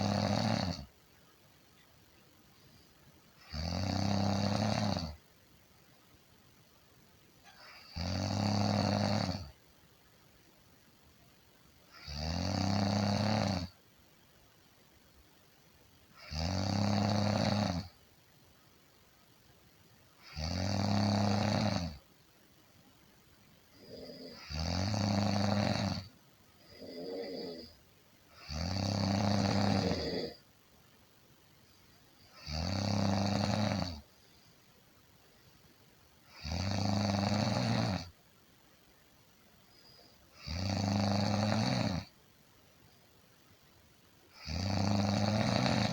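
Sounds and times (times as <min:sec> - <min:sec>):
person snoring: 0:00.0 - 0:00.9, 0:03.4 - 0:05.2, 0:07.5 - 0:09.5, 0:12.0 - 0:13.7, 0:16.2 - 0:17.9, 0:20.2 - 0:22.0, 0:23.7 - 0:27.8, 0:28.4 - 0:30.4, 0:32.3 - 0:34.0, 0:36.3 - 0:38.1, 0:40.3 - 0:42.1, 0:44.4 - 0:45.9.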